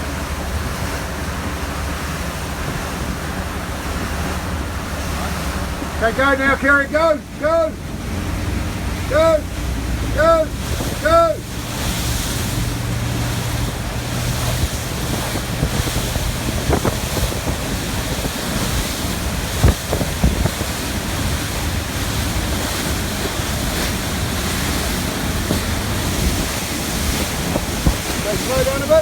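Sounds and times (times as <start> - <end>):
choppy sea water rushing: 0.0 - 29.0
low boat engine hum: 0.0 - 29.0
wind buffeting microphone: 0.0 - 29.0.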